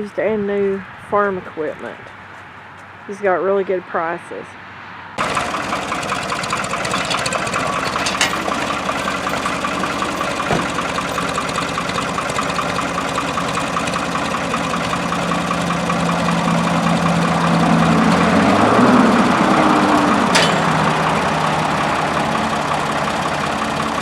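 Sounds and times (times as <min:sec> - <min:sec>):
engine idling: 0:05.2 - 0:24.0.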